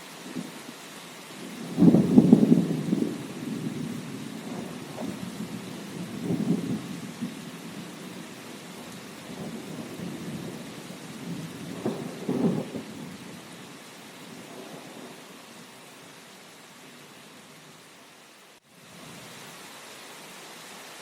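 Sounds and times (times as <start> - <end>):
rain hiss: 0.0 - 21.0.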